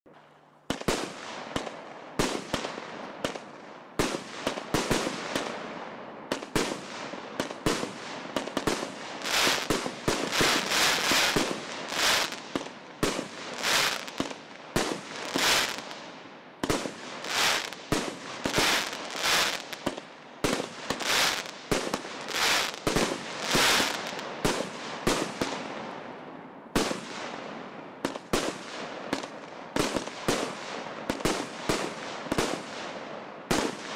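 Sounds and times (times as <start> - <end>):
firework crackling: 6.3 - 25.5.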